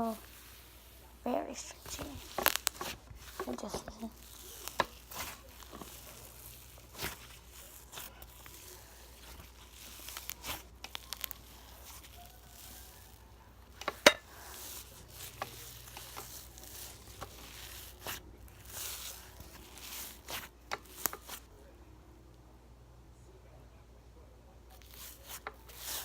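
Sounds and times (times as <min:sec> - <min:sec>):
slime squishing crackles: 0:00.0 - 0:21.5, 0:24.7 - 0:26.0
slime popping: 0:01.8 - 0:21.4.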